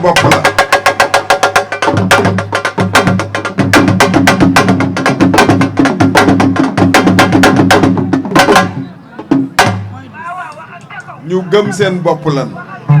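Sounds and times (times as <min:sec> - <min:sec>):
fast dense drumming: 0:00.0 - 0:09.9.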